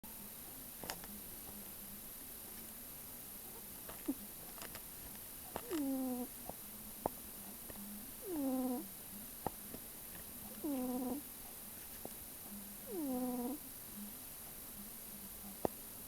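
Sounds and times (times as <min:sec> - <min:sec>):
faint low hum: 0:00.1 - 0:16.0
cat snoring: 0:05.6 - 0:06.4, 0:08.2 - 0:09.0, 0:10.5 - 0:11.3, 0:12.8 - 0:13.6.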